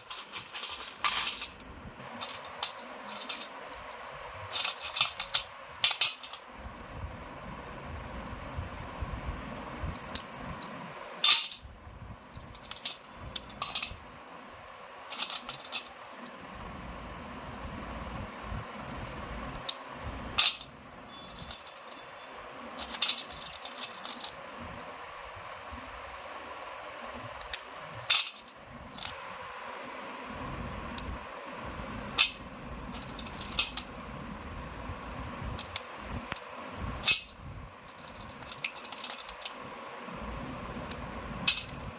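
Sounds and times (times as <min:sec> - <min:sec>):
slate pencils clicking and snapping: 0:00.0 - 0:06.4, 0:12.4 - 0:14.0, 0:15.1 - 0:16.4, 0:21.3 - 0:22.0, 0:22.8 - 0:26.4, 0:27.0 - 0:29.2, 0:32.2 - 0:33.9, 0:35.6 - 0:39.6
faint steady background noise: 0:00.0 - 0:41.9.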